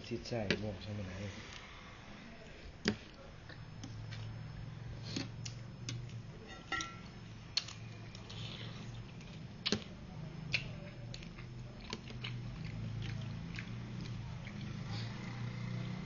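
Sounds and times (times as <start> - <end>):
steady low hum: 0.0 - 16.0
utensils tapping a bowl: 6.5 - 7.1.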